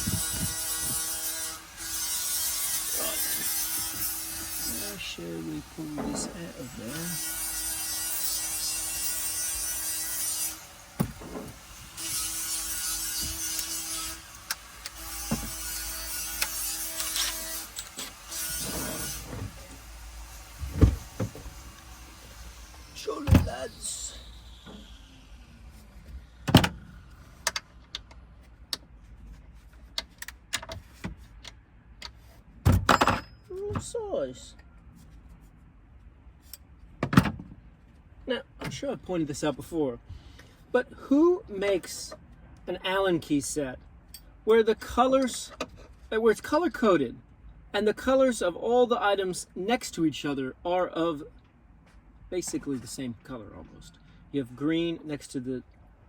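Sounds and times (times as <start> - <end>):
power tool rasping wood: 0.0 - 25.2
tools clattering: 5.9 - 6.8, 32.8 - 33.5
hand tools clicking and knocking: 5.9 - 7.0.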